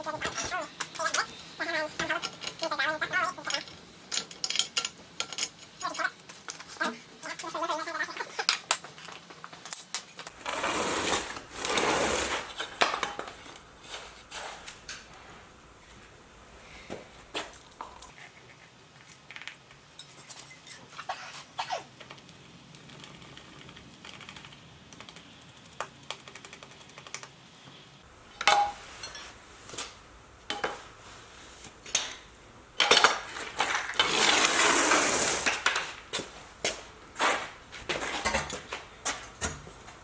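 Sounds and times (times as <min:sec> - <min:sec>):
metal parts clinking and knocking: 0:02.0 - 0:07.7, 0:08.4 - 0:10.3
loud rustling noise: 0:10.3 - 0:15.5, 0:33.0 - 0:40.0.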